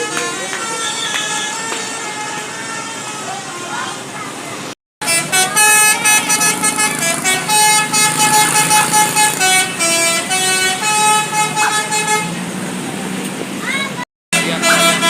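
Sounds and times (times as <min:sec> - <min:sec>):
musical bus air horn: 0:00.0 - 0:03.6, 0:05.0 - 0:12.4, 0:14.3 - 0:15.0.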